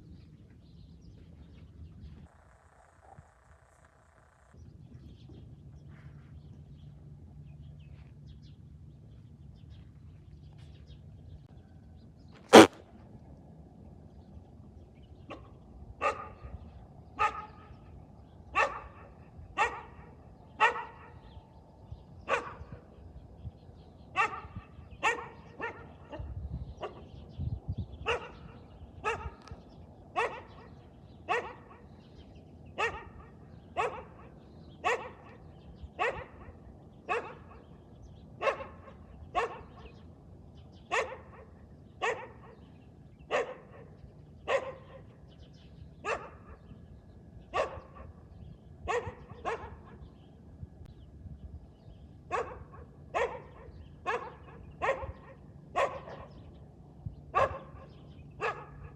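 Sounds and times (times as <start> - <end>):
dog barking: 15.3 - 16.4, 17.2 - 17.6, 18.6 - 21.2, 22.3 - 22.6, 24.2 - 27.0, 28.0 - 29.5, 30.2 - 30.7, 31.3 - 31.9, 32.8 - 35.4, 36.0 - 37.6, 38.4 - 40.0, 40.9 - 42.7, 43.3 - 45.1, 46.0 - 46.7, 47.5 - 48.2, 48.9 - 50.0, 52.3 - 56.4, 57.3 - 58.9.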